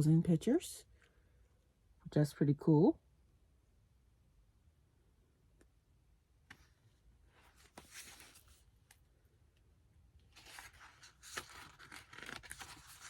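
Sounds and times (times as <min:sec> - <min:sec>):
paper pages rustling: 0:07.4 - 0:09.0, 0:10.2 - 0:13.0.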